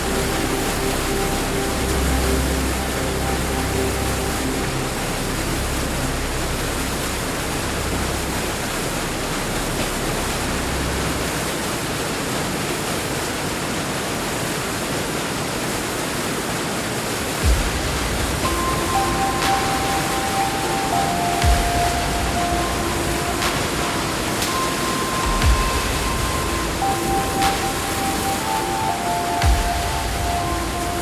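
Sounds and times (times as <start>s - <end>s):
low rumble: 0.0s - 11.8s
waterfall roar: 0.0s - 31.0s.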